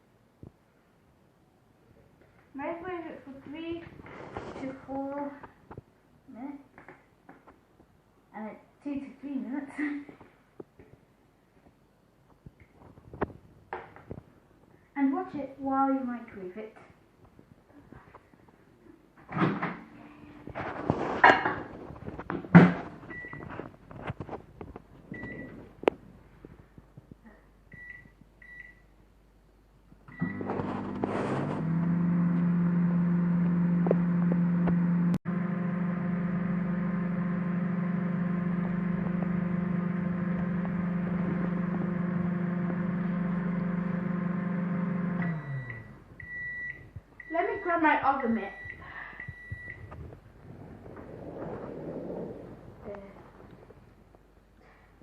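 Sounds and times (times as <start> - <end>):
microwave oven humming: 30.1 - 46.5.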